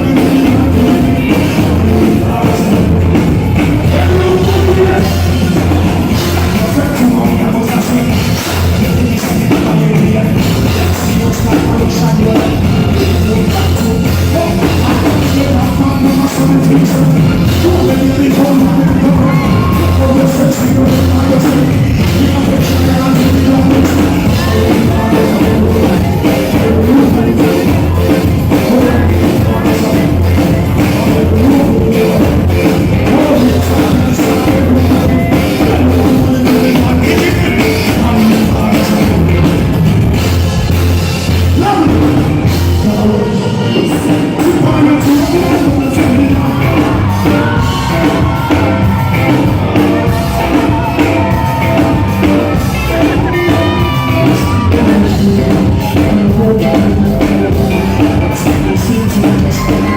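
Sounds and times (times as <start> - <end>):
live dancehall music: 0.0 - 59.9
vocals over beat: 0.0 - 59.9.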